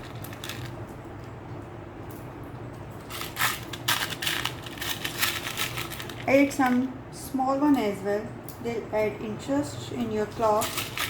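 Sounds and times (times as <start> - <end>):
faint steady hum: 0.0 - 11.0
seashells clicking and rustling: 3.1 - 6.3, 10.6 - 11.0.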